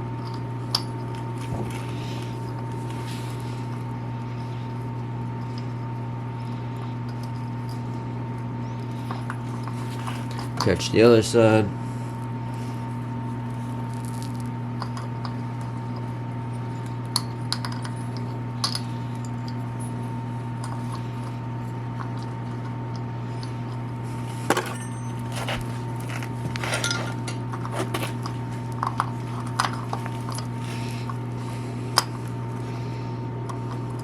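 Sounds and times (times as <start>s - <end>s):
steady low hum: 0.0s - 14.1s, 23.0s - 34.0s.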